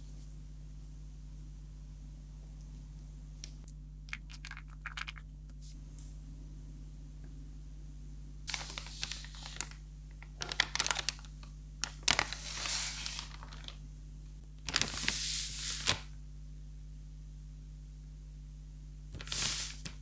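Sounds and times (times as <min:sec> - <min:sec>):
packaging rustling: 0:08.5 - 0:13.9, 0:14.6 - 0:16.1, 0:19.2 - 0:20.0.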